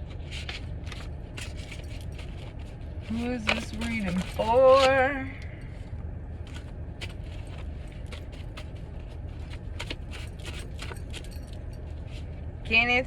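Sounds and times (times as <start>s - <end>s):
steady low hum: 0.0s - 13.0s
cards shuffling clicks: 0.3s - 5.1s.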